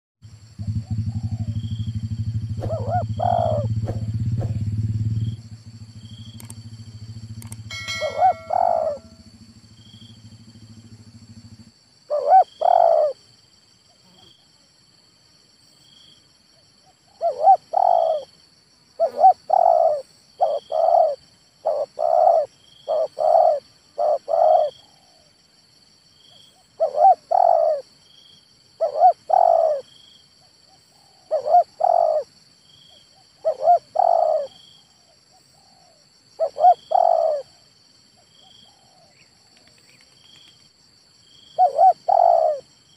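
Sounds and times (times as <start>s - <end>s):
insects trilling: 0.2s - 42.9s
low hum: 0.3s - 11.8s
dove cooing: 0.6s - 4.7s, 7.4s - 13.2s, 16.8s - 18.3s, 19.0s - 25.4s, 26.6s - 27.9s, 28.8s - 29.9s, 30.9s - 32.3s, 33.4s - 37.7s, 38.4s - 40.1s, 41.5s - 42.7s.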